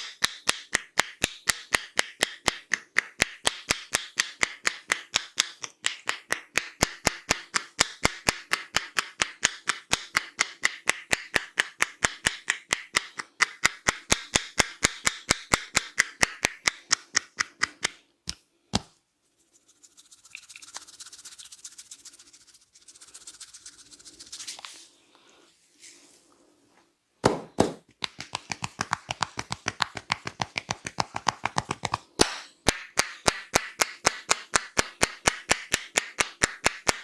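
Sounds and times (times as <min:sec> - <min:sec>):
hands tapping on head: 0:00.0 - 0:18.9, 0:27.2 - 0:37.0
hands rubbing hair and scalp: 0:18.8 - 0:25.0, 0:25.6 - 0:26.5, 0:27.6 - 0:32.3.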